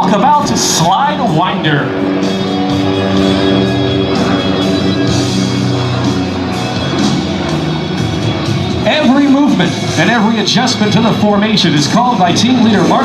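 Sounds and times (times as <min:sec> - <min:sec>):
rock guitar chords: 0:00.8 - 0:11.2.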